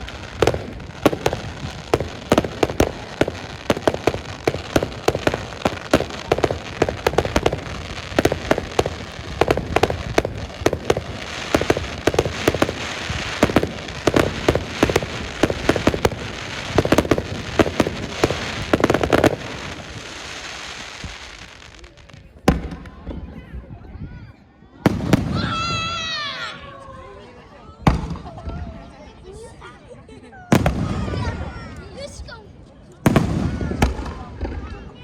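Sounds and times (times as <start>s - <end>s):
fireworks hiss: 0.0s - 22.0s
fireworks bangs and crackles: 0.0s - 24.0s, 24.8s - 26.2s, 27.8s - 29.0s, 30.4s - 35.0s.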